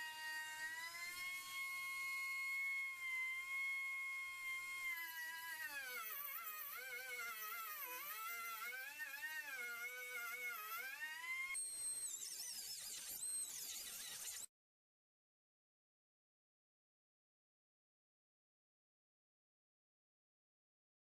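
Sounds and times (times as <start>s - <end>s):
rotary tool whining: 0.0s - 14.5s.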